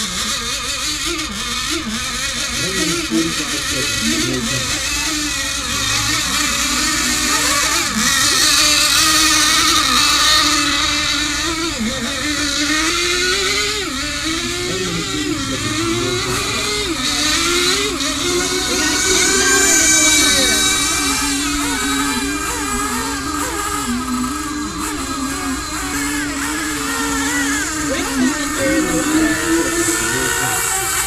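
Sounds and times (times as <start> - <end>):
rc boat engines whining: 0.0 - 31.0.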